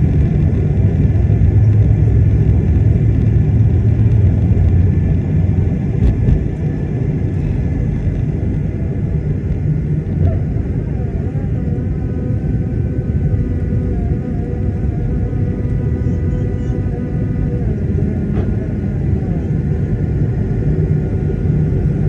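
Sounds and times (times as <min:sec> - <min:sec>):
faint steady engine tones: 0:00.0 - 0:22.0
jet engine cabin rumble: 0:00.0 - 0:22.0.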